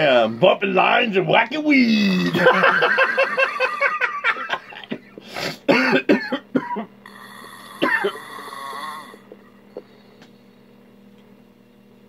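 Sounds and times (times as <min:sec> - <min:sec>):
man snoring: 0:01.8 - 0:02.8, 0:07.0 - 0:10.3.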